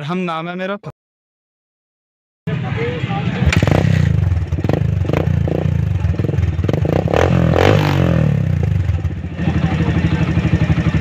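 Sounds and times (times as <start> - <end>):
motorcycle engine idling with pops: 3.5 - 4.6.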